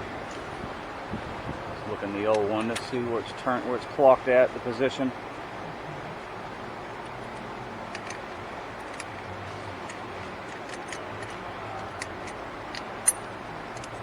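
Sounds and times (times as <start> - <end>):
small metallic clicks: 7.0 - 14.0.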